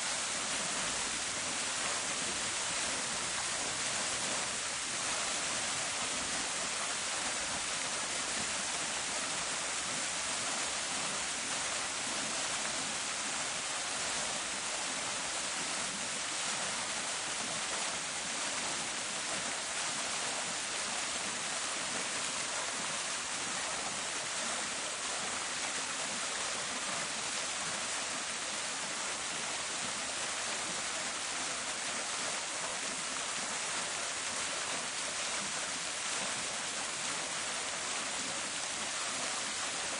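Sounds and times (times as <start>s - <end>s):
fountain water splashing: 0.0s - 39.9s.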